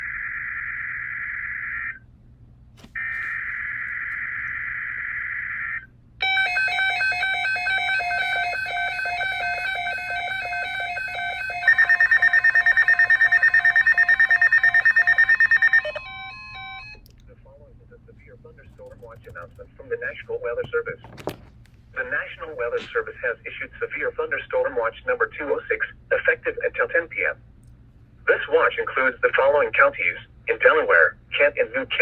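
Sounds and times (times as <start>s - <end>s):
electronic alert beeps: 6.2s - 17.0s.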